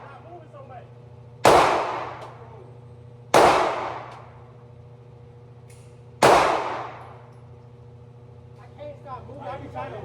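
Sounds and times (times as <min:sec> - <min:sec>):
gunshots: 0:01.4 - 0:02.4, 0:03.3 - 0:04.2, 0:06.2 - 0:07.1.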